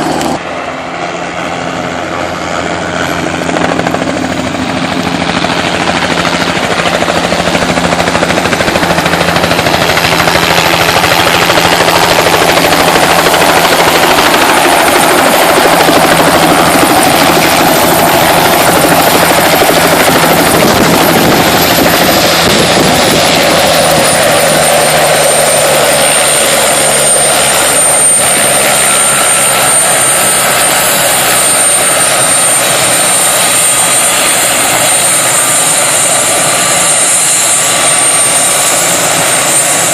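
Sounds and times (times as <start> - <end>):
helicopter running: 0.0 - 39.9.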